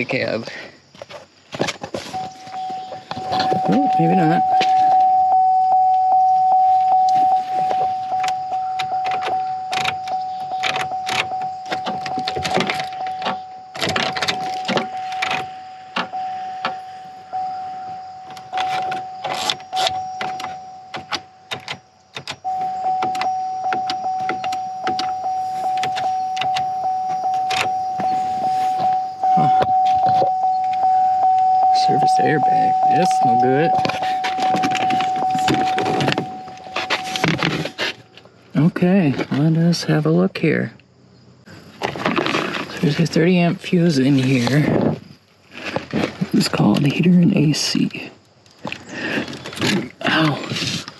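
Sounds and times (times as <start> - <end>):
steady electronic tone: 2.2 - 12.2, 22.4 - 37.8
sharp clicks and knocks: 18.3 - 25.2.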